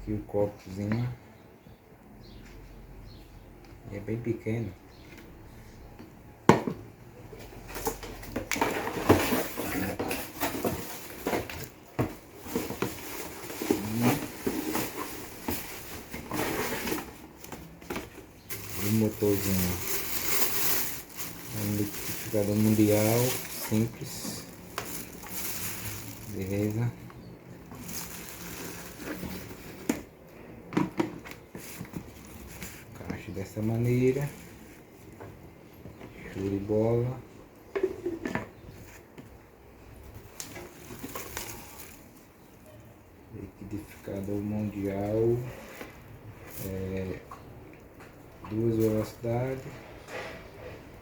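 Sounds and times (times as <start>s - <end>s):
plastic parts clattering: 7.7s - 27.0s, 27.6s - 30.0s
packaging rustling: 7.7s - 30.1s, 40.2s - 42.3s.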